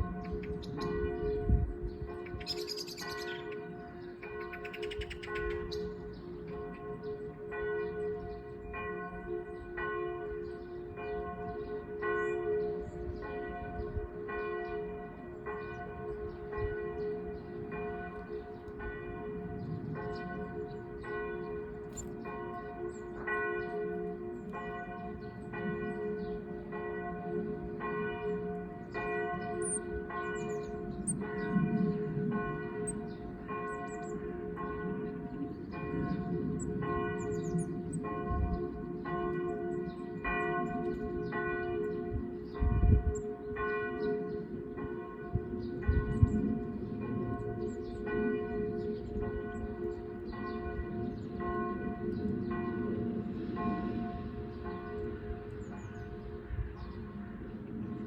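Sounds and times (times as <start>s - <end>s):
church bells pealing: 0.0s - 58.0s.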